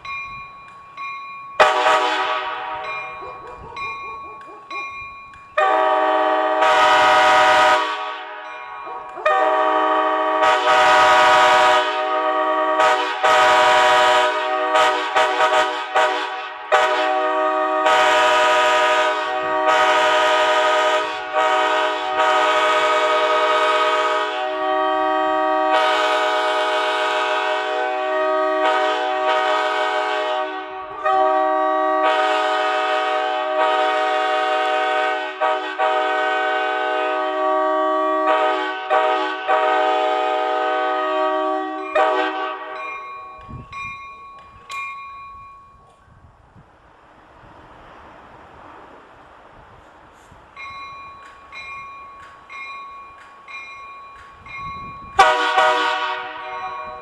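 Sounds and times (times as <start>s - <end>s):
locomotive air horns blasting: 1.6s - 2.9s, 5.6s - 8.4s, 9.2s - 42.8s, 54.9s - 57.0s.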